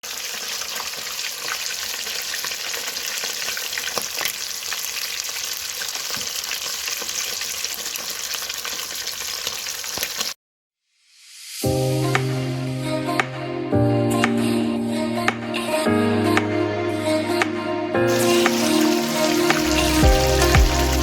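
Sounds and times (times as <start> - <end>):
food deep-frying in oil: 0.0 - 10.4, 18.1 - 21.0
oil crackling and popping: 0.0 - 10.4, 18.1 - 21.0.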